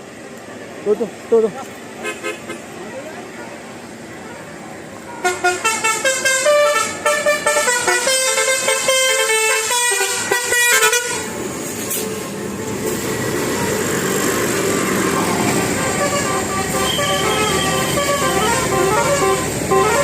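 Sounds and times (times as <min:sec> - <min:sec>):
rushing vehicle noise: 0:00.0 - 0:20.0
musical air horn tune: 0:05.2 - 0:13.8, 0:15.5 - 0:20.0.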